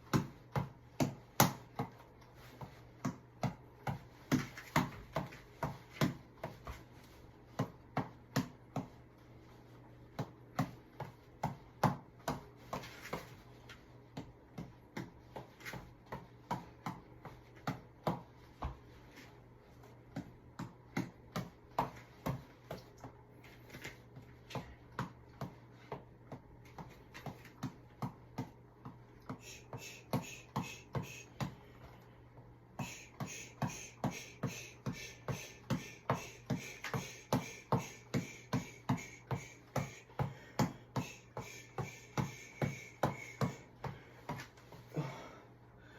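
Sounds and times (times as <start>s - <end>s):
steady low hum: 0.0s - 45.9s
tap ball taps: 10.1s - 13.3s, 14.1s - 18.8s, 24.5s - 31.6s, 32.4s - 44.5s.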